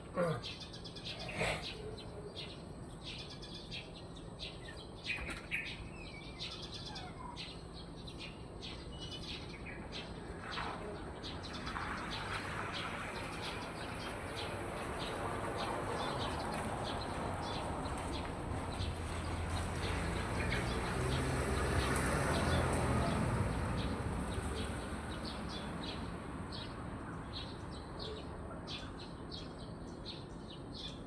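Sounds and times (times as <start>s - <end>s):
small birds chirping: 0.0s - 31.0s.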